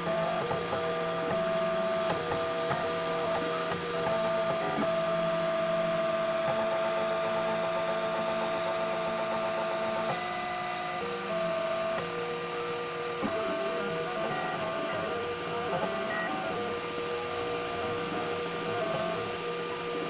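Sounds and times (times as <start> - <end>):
steady hum: 0.0 - 20.0
stepper motors whining: 10.8 - 20.0.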